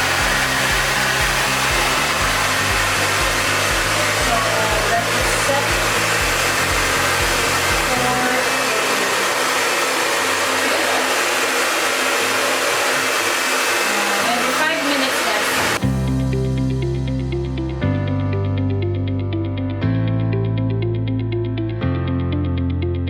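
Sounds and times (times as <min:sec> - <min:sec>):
background music: 0:00.0 - 0:11.0, 0:15.8 - 0:23.0
hair dryer rush of air: 0:00.0 - 0:16.1.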